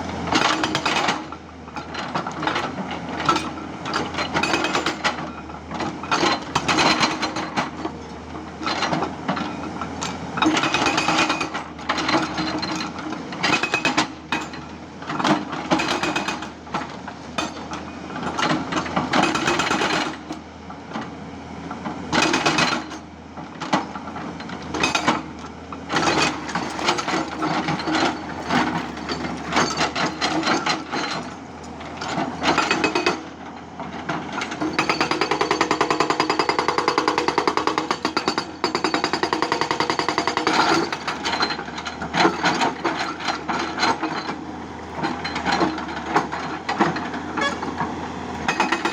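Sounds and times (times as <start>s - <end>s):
excavator engine hum: 0.0s - 48.9s
hydraulic rock breaker hammering: 15.4s - 16.6s, 25.9s - 31.4s, 32.0s - 33.3s, 34.4s - 47.8s, 48.4s - 48.9s.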